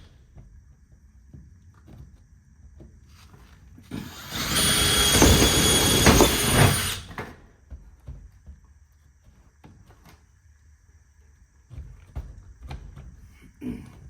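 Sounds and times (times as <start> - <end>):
power cutting tool whining: 3.9 - 7.2.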